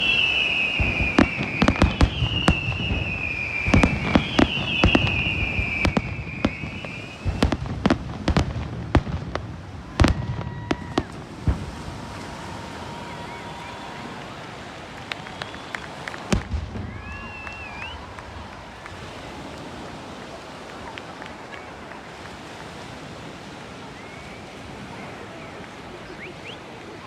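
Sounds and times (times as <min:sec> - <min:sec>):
high wavering whistle: 0:00.0 - 0:07.6, 0:16.8 - 0:18.1
fireworks bangs and cracks: 0:00.0 - 0:21.4.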